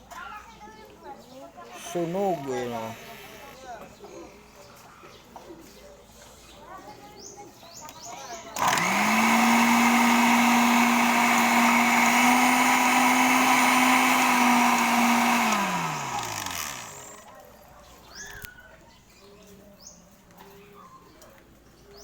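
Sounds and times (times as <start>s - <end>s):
blender motor running: 1.8s - 3.6s, 8.5s - 17.3s.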